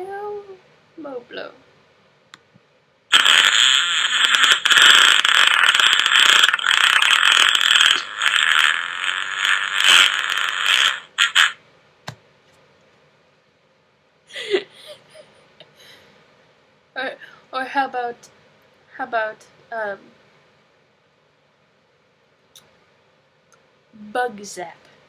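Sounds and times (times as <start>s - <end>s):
fart sound effect: 3.1s - 11.6s.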